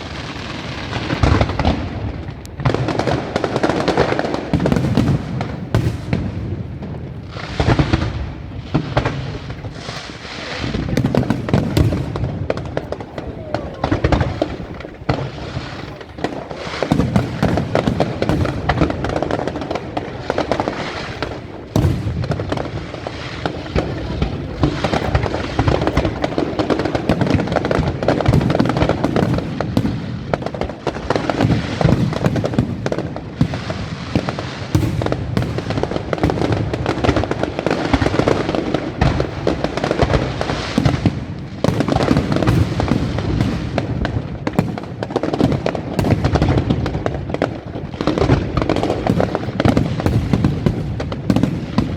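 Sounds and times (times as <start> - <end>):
deep firework booms: 0.0 - 51.9
firework shell bursts and crackling: 0.0 - 51.9.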